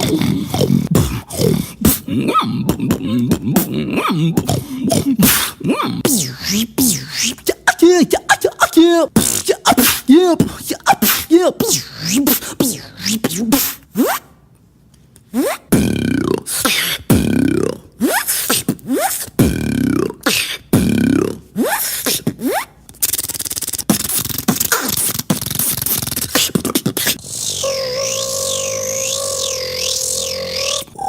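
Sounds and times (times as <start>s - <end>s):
beatboxer swooping pitched sounds: 0.0s - 14.4s, 15.2s - 31.0s
beatboxer crackling clicking noise: 18.2s - 19.6s, 21.8s - 27.2s.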